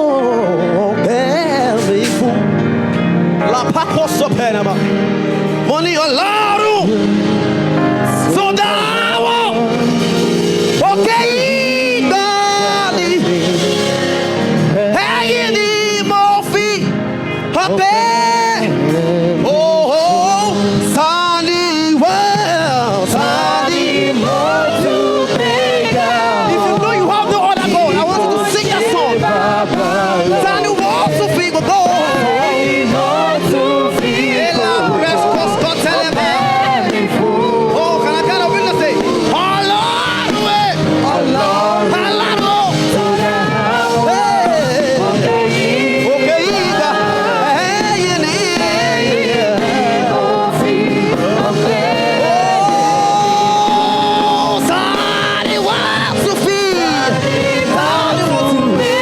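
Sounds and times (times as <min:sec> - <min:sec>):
band accompaniment: 0:00.0 - 0:59.0
choir singing: 0:05.8 - 0:16.5, 0:17.7 - 0:59.0
steady beat: 0:21.4 - 0:59.0.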